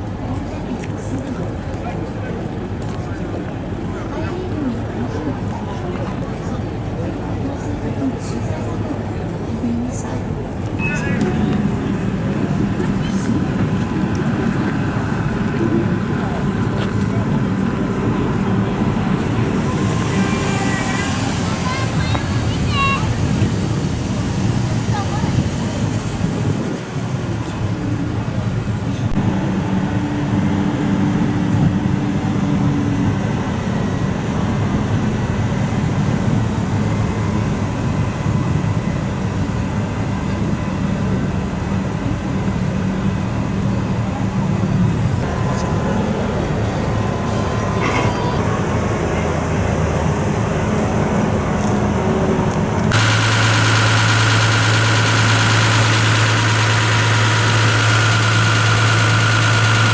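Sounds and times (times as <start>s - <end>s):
truck engine running: 10.8s - 31.6s, 41.4s - 59.9s.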